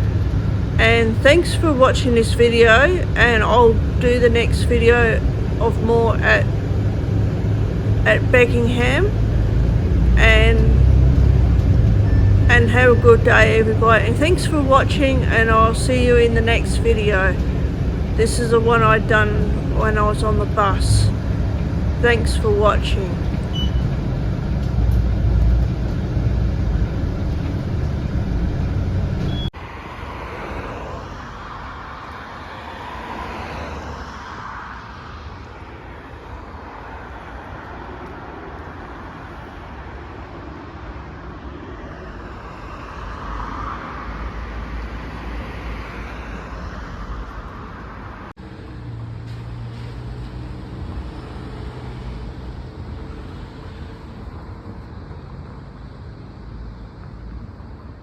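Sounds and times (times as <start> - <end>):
bus engine rumble: 0.0 - 29.6, 34.0 - 58.0
low engine hum: 0.0 - 31.2
vehicles passing: 0.0 - 58.0.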